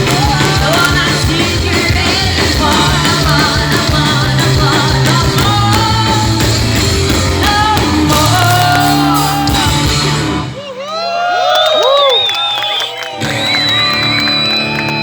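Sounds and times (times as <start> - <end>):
lead singer singing: 0.0 - 10.2
rock band playing live: 0.0 - 10.6.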